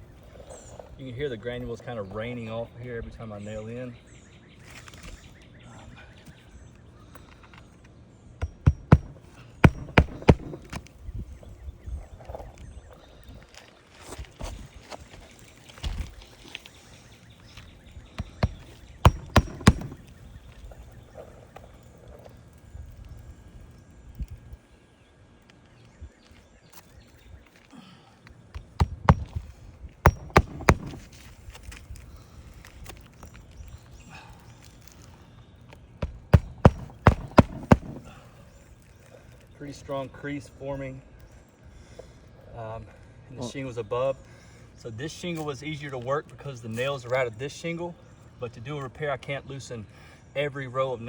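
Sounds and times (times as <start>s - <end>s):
hammer striking roofing nails: 8.4s - 10.9s, 18.2s - 20.2s, 28.6s - 31.2s, 36.0s - 38.2s
shingles scuffing: 28.6s - 32.1s, 36.0s - 38.2s.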